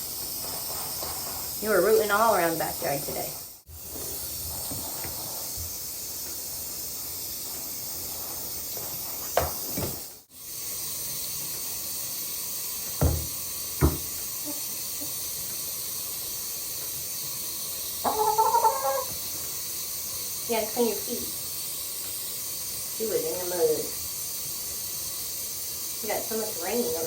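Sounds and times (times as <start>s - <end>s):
water running from a tap: 0.0s - 27.0s
soft knocks: 13.0s - 14.1s.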